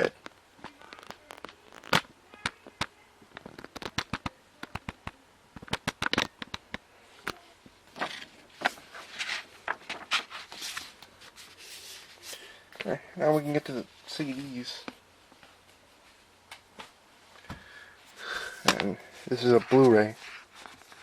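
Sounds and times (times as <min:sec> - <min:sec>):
paper crackling and rustling: 0:00.0 - 0:06.8, 0:07.9 - 0:12.2, 0:18.6 - 0:21.0.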